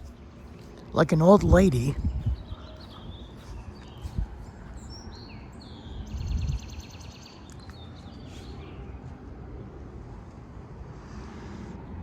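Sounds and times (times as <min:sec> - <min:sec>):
birds chirping: 0:00.0 - 0:09.0
wind rumbling on microphone: 0:00.0 - 0:12.0.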